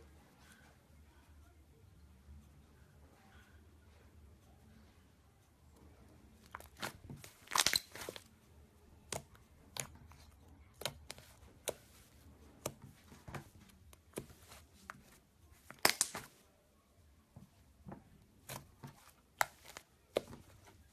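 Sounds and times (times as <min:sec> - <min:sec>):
slime squishing by hand: 0:06.4 - 0:08.3, 0:09.0 - 0:16.5, 0:17.4 - 0:20.9.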